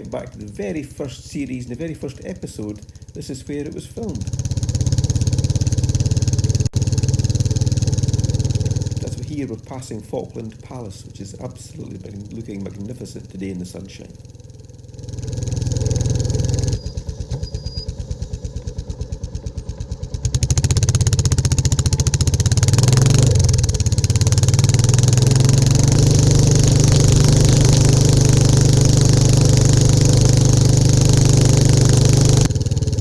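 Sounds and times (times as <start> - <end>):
motorcycle engine and exhaust: 0.0 - 33.0.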